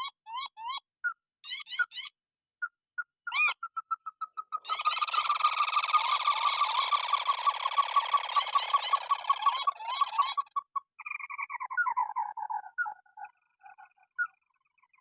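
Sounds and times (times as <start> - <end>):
birds calling: 3.3 - 15.0.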